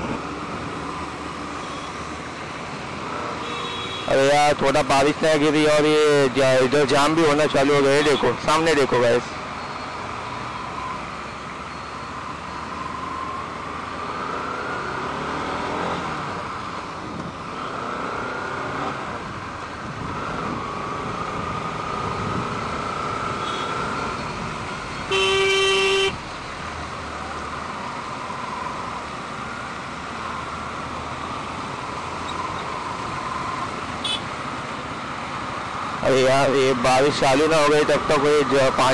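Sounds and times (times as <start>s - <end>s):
road and wind noise: 0.0s - 38.9s
vehicle horn honking: 3.4s - 4.1s, 23.4s - 23.8s, 25.1s - 26.2s, 34.0s - 34.3s
motorcycle engine: 20.1s - 26.0s.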